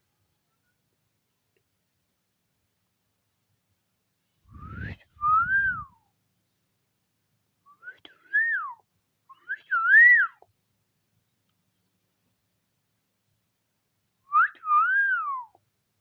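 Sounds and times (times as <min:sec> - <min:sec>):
low rumble: 0:04.5 - 0:05.9
person whistling: 0:04.5 - 0:06.0.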